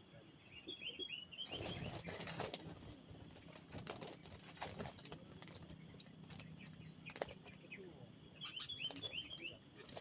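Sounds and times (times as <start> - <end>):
birds calling: 5.6 - 9.9.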